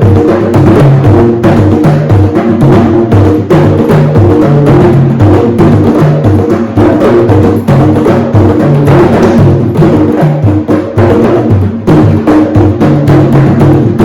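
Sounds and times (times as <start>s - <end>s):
hand drums playing: 0.0s - 14.0s.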